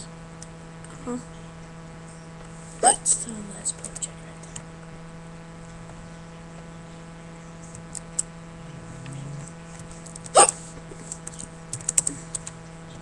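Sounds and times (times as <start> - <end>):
steady background hum: 0.0 - 13.0
girl hiccuping: 2.8 - 3.1.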